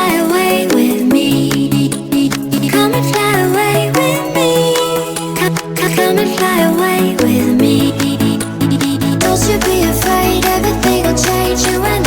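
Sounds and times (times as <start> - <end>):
electronic pop music: 0.0 - 12.0.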